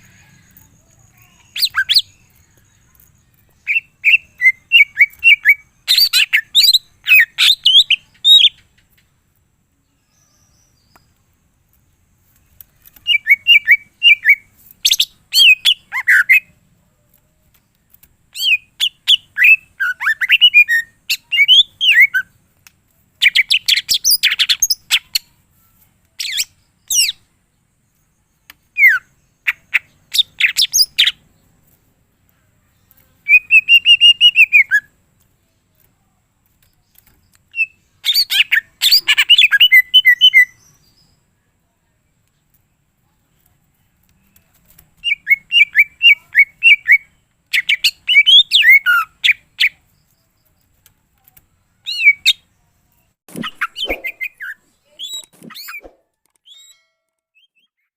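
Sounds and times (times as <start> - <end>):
bird singing whistles and chirps: 0.0 - 8.6, 12.9 - 16.5, 18.3 - 22.4, 26.2 - 27.3, 27.9 - 31.2, 33.2 - 35.0, 37.0 - 41.2, 45.0 - 50.2, 51.7 - 52.5, 53.3 - 57.9.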